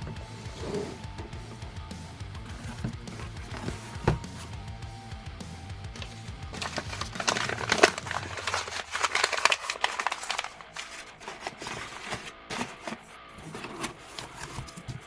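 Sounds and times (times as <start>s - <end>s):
packing material crinkling: 6.0s - 15.0s.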